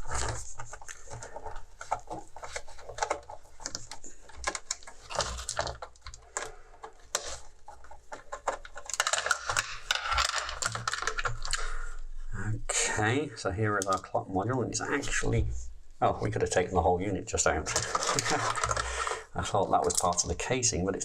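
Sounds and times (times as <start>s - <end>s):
clicks and knocks of casing parts: 0.0s - 11.7s, 17.7s - 19.1s
scraping and rattling: 0.0s - 11.9s, 17.5s - 20.3s.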